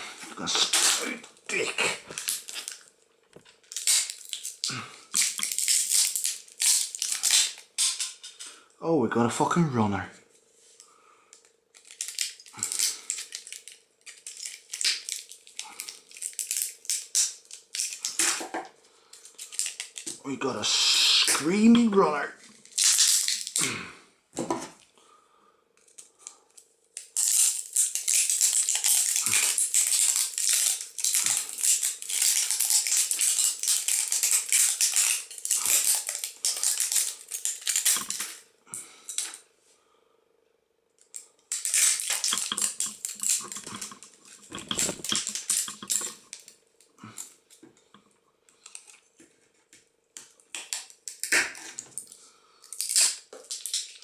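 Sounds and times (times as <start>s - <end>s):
battery hissing and crackling: 41.5s - 46.5s.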